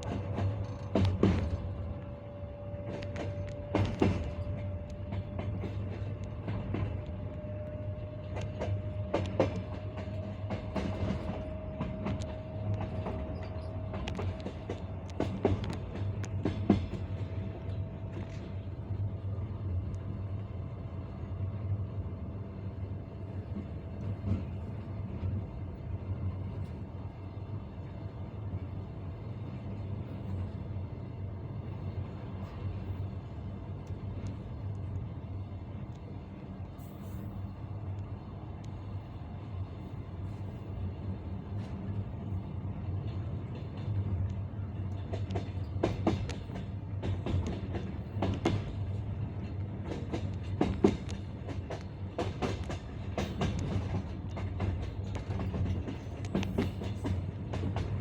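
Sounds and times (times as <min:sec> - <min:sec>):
clacks at rail joints: 0:00.0 - 0:19.3, 0:23.5 - 0:25.5, 0:41.5 - 0:58.0
train wheels rumbling: 0:00.0 - 0:58.0.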